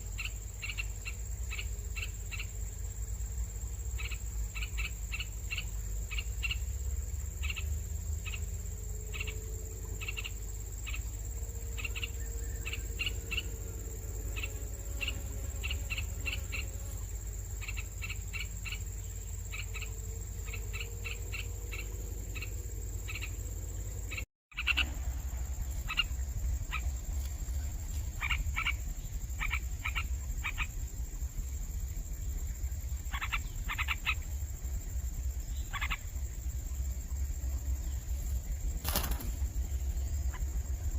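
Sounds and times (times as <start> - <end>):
steady low rumble: 18.8 - 40.9.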